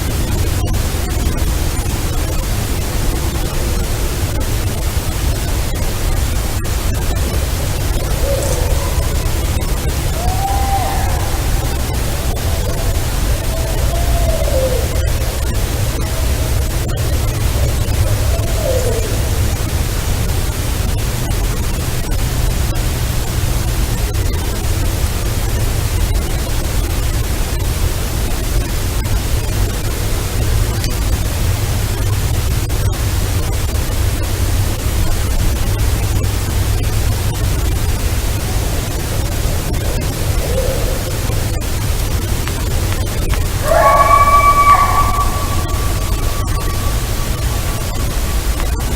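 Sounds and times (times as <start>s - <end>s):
recording hiss and rumble: 0.0s - 48.9s
faint wavering howl-like calls: 7.2s - 19.7s, 39.2s - 48.9s.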